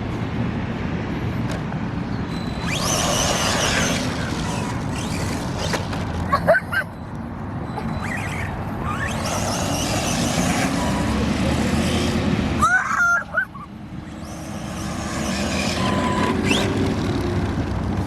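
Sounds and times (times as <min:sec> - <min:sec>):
electric motor whining: 0:02.6 - 0:06.2, 0:07.8 - 0:12.6, 0:14.0 - 0:17.2.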